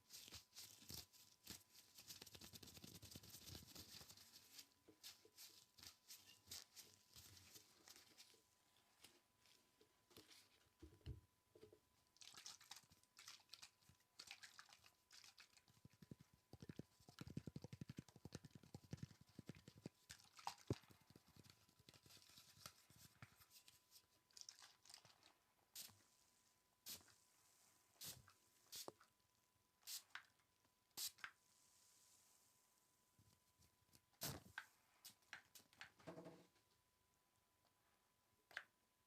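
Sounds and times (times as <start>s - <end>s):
soft tapping and clicks: 15.9s - 20.0s.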